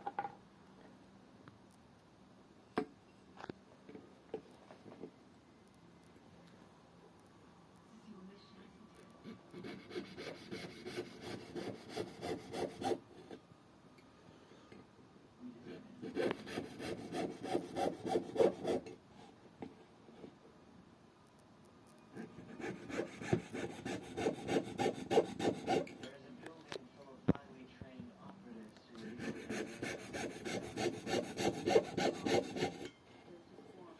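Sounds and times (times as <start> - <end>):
hand saw cutting wood: 9.6 - 13.0, 16.0 - 18.9, 22.2 - 26.0, 29.1 - 32.9.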